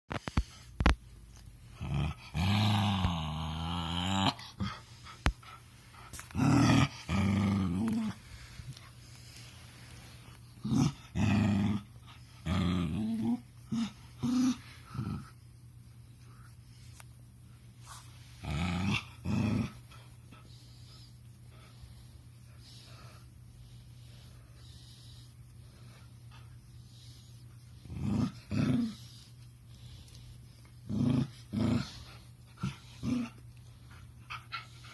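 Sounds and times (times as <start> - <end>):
puppy grunting growls: 1.7 - 4.8, 6.4 - 8.2, 27.9 - 29.1
puppy grunting and growling: 1.7 - 5.1, 6.3 - 8.3, 10.6 - 15.3, 18.4 - 20.0, 27.8 - 29.2, 30.8 - 33.4.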